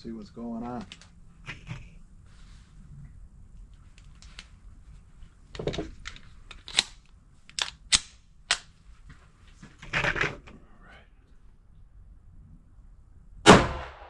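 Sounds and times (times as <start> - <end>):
pistol shots: 13.4 - 14.0.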